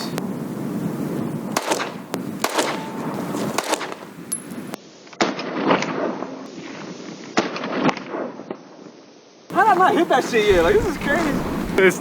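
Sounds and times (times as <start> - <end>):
wind noise: 0.0 - 4.8, 9.5 - 12.0
pistol shots: 1.5 - 4.1.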